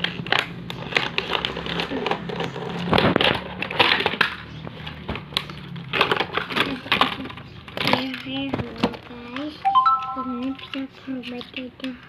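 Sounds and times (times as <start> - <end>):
plastic toy clicks and rattles: 0.0 - 9.6.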